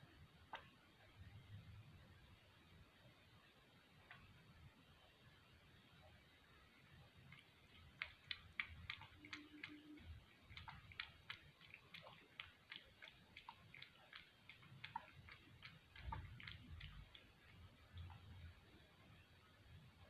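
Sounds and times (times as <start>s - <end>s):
cat lapping milk: 7.0s - 18.8s.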